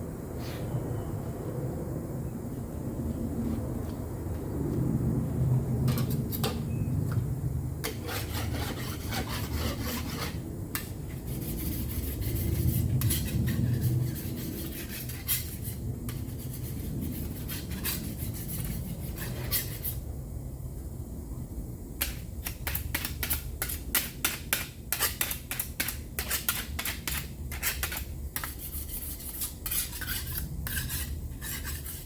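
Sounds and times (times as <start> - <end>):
scraping on a hard surface: 7.8 - 20.0, 24.9 - 32.0.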